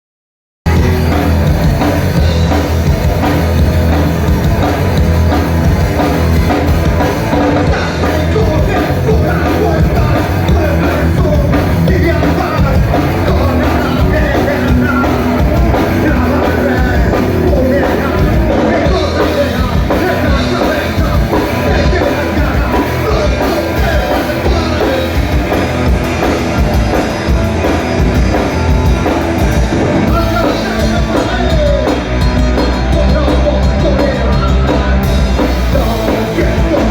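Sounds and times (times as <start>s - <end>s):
drum kit: 0.6s - 36.9s
rock band playing loudly: 0.6s - 36.9s
person singing: 7.3s - 25.7s, 30.0s - 36.9s.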